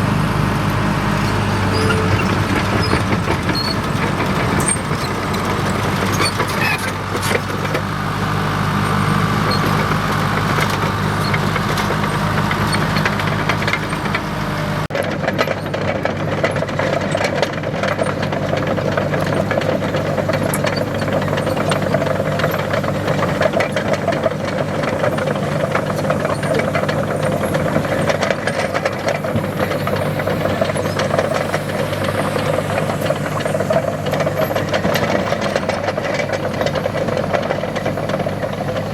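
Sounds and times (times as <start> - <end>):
heavy machine diesel engine: 0.0 - 38.9.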